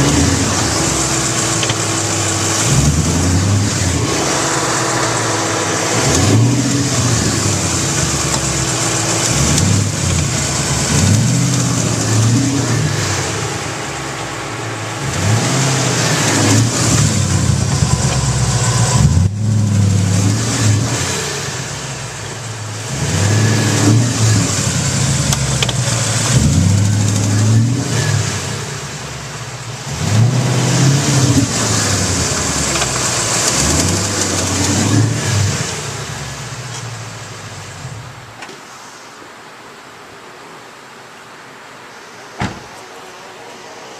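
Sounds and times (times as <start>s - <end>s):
car engine revving: 0.0s - 38.4s
engine ticking: 0.0s - 38.4s.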